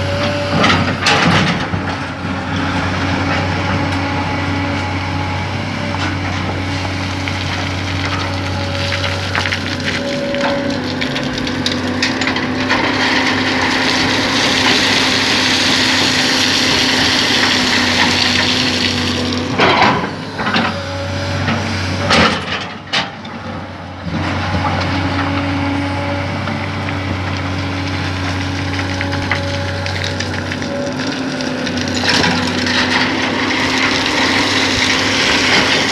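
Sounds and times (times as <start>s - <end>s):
diesel engine running: 0.0s - 35.9s
bucket scraping through sand: 12.5s - 20.2s.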